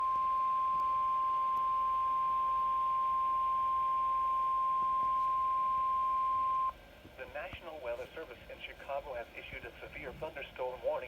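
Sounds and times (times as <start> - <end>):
loud steady alarm beep: 0.0 - 6.7.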